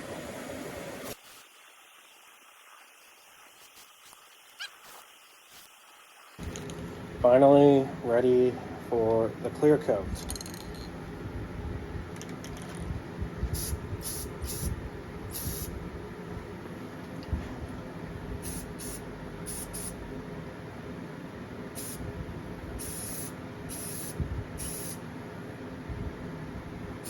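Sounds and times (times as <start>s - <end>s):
aerosol spray hissing: 13.6s - 15.8s, 18.4s - 20.0s, 21.8s - 22.0s, 22.8s - 25.0s.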